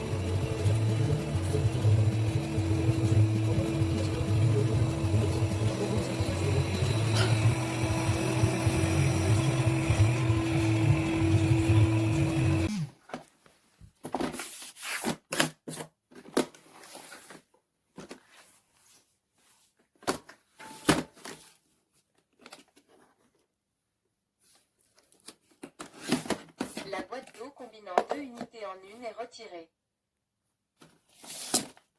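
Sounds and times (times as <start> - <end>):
robot vacuum motor hum: 0.0 - 12.9.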